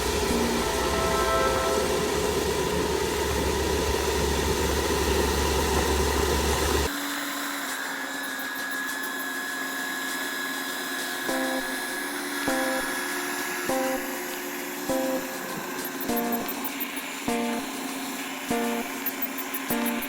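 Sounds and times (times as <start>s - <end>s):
hum with high tone: 0.0s - 6.9s, 11.3s - 13.0s, 13.6s - 16.7s, 17.3s - 17.8s, 18.5s - 20.0s.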